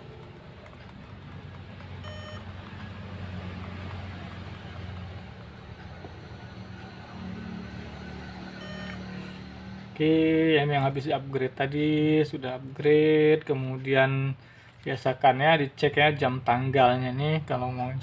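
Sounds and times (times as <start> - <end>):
short electronic beep: 2.0 - 2.4, 8.6 - 9.4.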